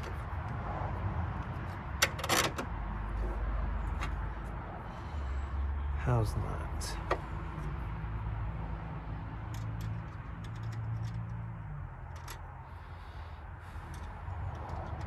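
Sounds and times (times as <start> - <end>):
small parts clicking and tapping: 9.4 - 11.4, 12.0 - 12.4, 13.8 - 15.0.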